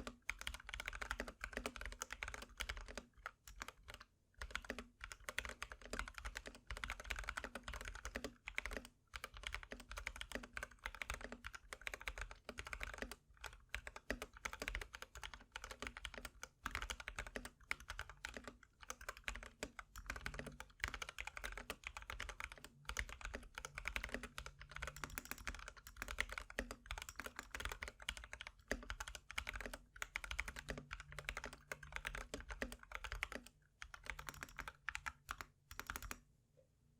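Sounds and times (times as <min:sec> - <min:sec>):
typing on mechanical keyboard: 0:00.0 - 0:36.2.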